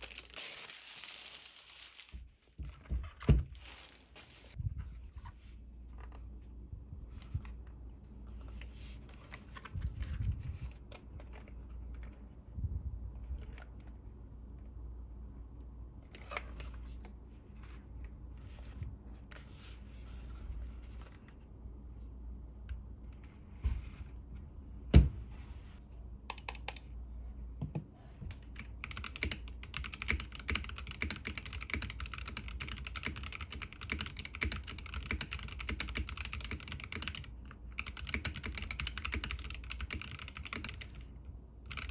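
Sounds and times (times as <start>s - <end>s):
keyboard typing clicks: 26.3s - 26.9s.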